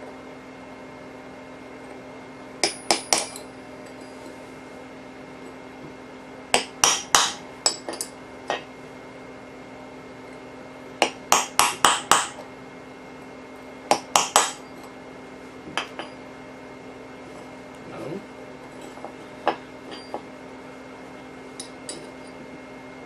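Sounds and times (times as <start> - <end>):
hammer striking steel punch: 2.6 - 3.4, 6.5 - 8.6, 11.0 - 12.4, 13.9 - 14.7.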